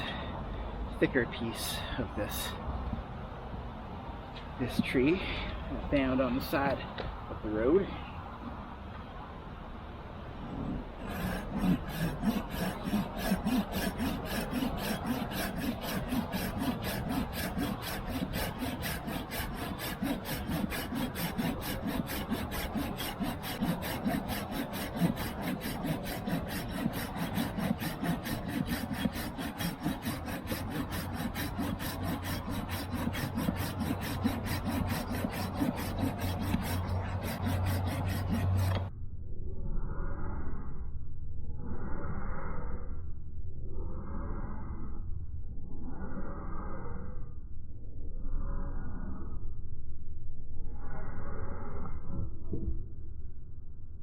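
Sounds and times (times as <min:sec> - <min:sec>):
saw rasping through wood: 0:10.6 - 0:38.9.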